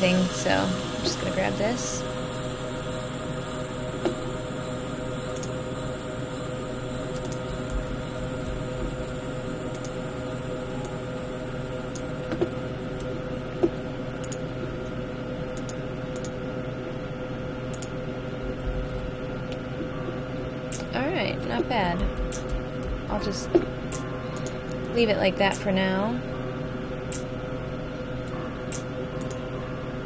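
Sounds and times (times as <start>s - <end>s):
steady hum of held tones: 0.0s - 30.0s
sharp computer clicks: 5.3s - 5.6s, 7.1s - 7.5s, 9.7s - 10.0s, 14.2s - 14.4s, 15.5s - 16.4s, 17.7s - 18.0s, 22.3s - 22.9s, 28.7s - 29.4s.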